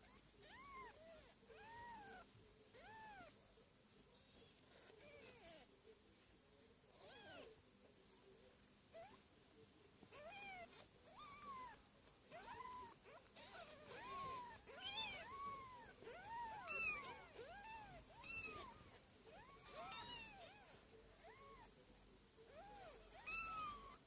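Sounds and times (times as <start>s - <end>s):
kittens mewing: 10.1s - 21.7s, 22.5s - 24.0s.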